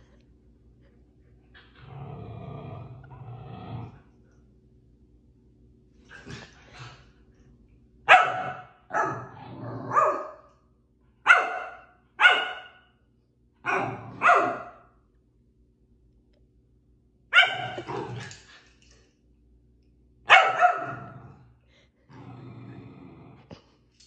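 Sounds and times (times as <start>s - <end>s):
dog barking: 8.1s - 9.3s, 9.9s - 10.4s, 11.2s - 12.9s, 13.6s - 14.9s, 17.3s - 17.8s, 20.3s - 21.1s.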